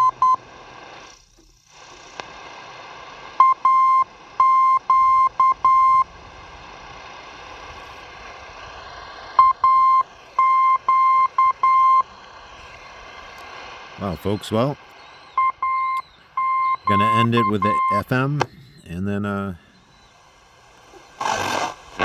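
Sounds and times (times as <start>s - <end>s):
morse code beeping tone: 0.0s - 0.4s, 3.4s - 6.0s, 9.4s - 12.1s, 15.3s - 19.7s
radio static: 0.0s - 22.0s.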